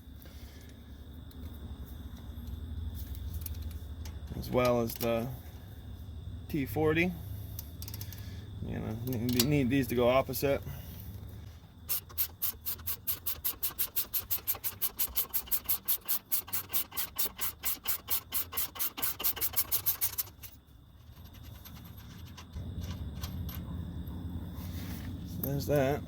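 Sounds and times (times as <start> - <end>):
ratcheting wrench clicking: 7.8 - 8.2, 11.9 - 23.6.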